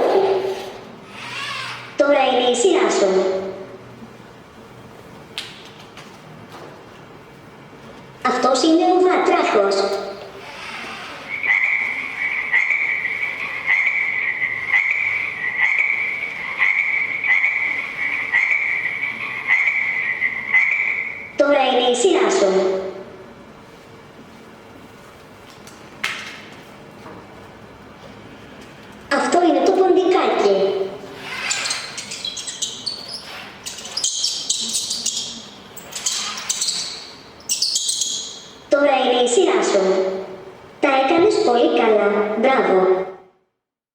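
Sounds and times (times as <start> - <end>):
mouse squeaking: 10.6 - 21.1, 31.2 - 38.6
frog croak: 10.6 - 21.2
frog trill from speaker: 10.6 - 21.2.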